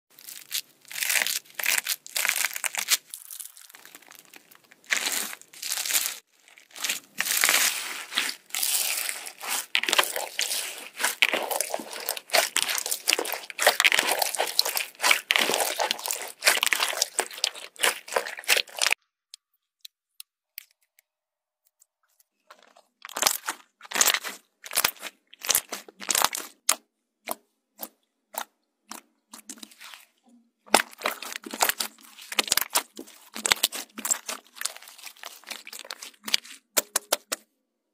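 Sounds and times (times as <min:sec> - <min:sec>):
slime crackling and popping: 0:00.2 - 0:19.0, 0:23.1 - 0:26.8, 0:30.7 - 0:37.0.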